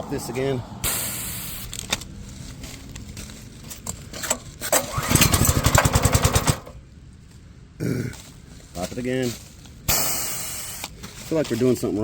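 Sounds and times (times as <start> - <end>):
small engine cranking without starting: 4.7 - 6.7.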